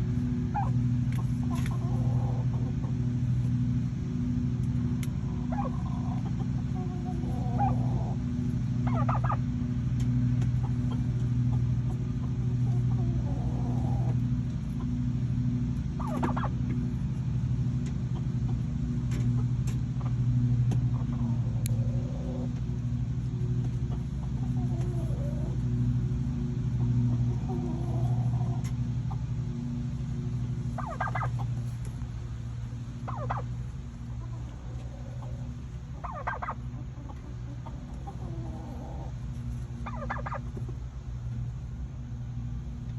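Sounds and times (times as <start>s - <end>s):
low hum: 0.0s - 42.9s
hen turkey calls: 0.4s - 3.1s, 5.2s - 8.2s, 8.8s - 9.6s, 10.6s - 14.2s, 16.0s - 16.7s, 23.8s - 25.6s, 26.8s - 29.2s, 30.7s - 31.6s, 33.0s - 33.5s, 34.1s - 39.2s, 39.8s - 40.6s
turkey gobbling: 0.4s - 3.2s, 5.2s - 15.1s, 15.9s - 16.8s, 19.3s - 20.3s, 20.9s - 22.6s, 23.5s - 25.8s, 26.7s - 29.3s, 30.7s - 31.9s, 33.0s - 40.7s.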